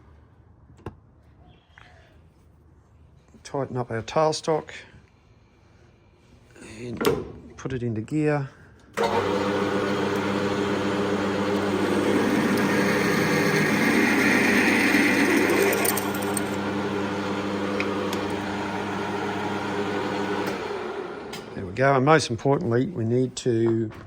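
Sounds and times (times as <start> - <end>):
metal lathe humming: 9.0 - 21.8
drill bit cutting metal hiss: 11.4 - 18.8.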